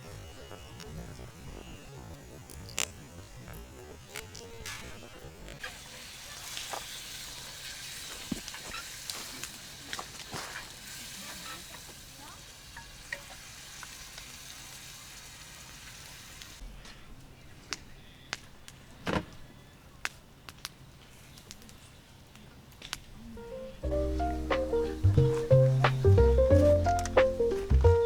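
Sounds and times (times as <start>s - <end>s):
food sizzling in a pan: 4.2s - 16.6s, 23.4s - 28.0s.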